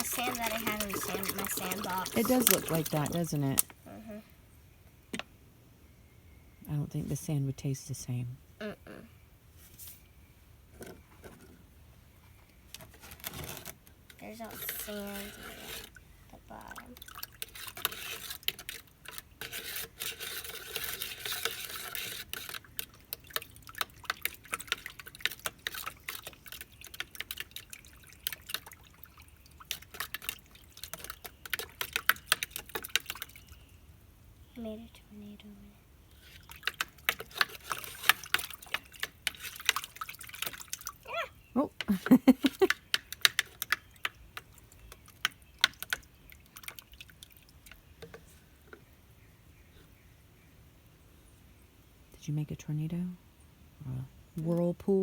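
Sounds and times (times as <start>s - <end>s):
liquid swishing in tub: 0.0s - 3.5s
short vocal sound: 8.6s - 9.2s.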